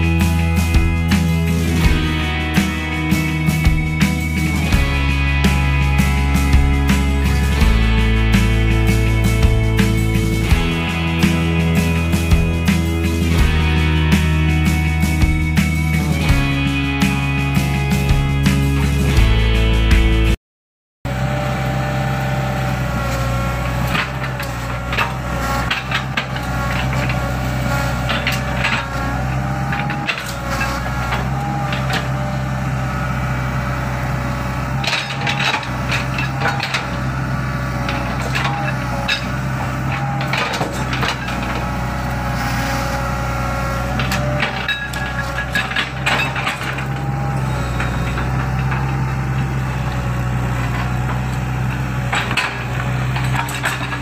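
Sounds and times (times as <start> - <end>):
excavator diesel engine running: 0.0 - 20.4, 21.1 - 54.0
machine knocks and clanks: 23.8 - 32.3, 34.7 - 42.0, 43.9 - 54.0.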